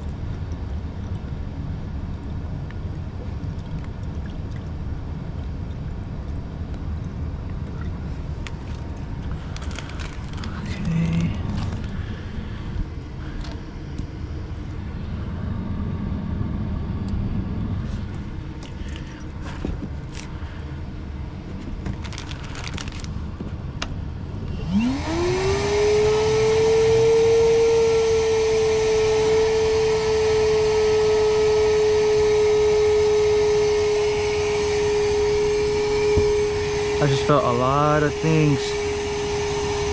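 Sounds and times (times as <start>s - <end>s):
vacuum motor whine: 8.4s - 39.9s.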